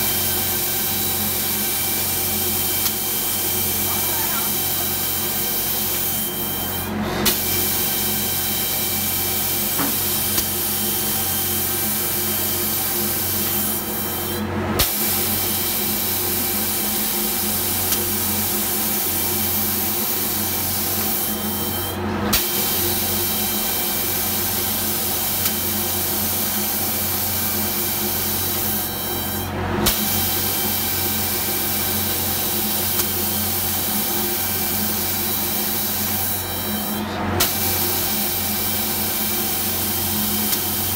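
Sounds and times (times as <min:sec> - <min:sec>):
hiss of compressed air: 0:22.3 - 0:28.8, 0:29.8 - 0:40.9.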